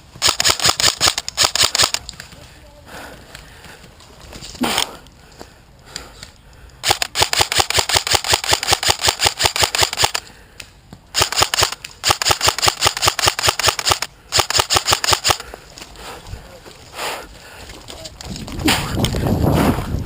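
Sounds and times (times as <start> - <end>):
airsoft rifle rapid shots: 0.2 - 2.0, 6.8 - 10.2, 11.1 - 15.5.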